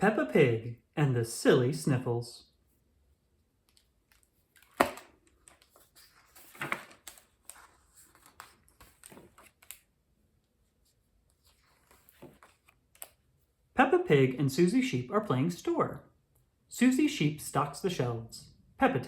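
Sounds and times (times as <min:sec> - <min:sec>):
book pages rustling: 0:03.6 - 0:13.4.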